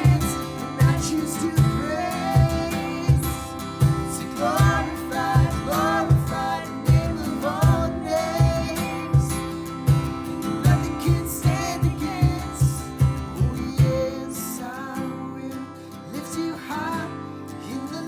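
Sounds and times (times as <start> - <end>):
acoustic guitar music: 0.0 - 18.0
steady low beat: 2.4 - 13.2.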